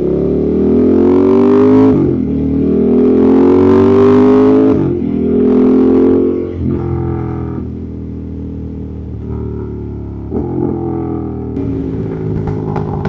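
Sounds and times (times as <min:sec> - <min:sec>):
motorcycle engine running: 0:06.4 - 0:13.0.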